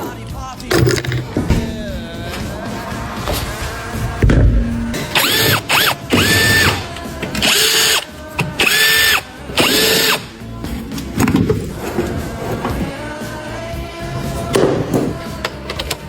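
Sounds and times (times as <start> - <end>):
cordless power tool whining: 5.0 - 10.4.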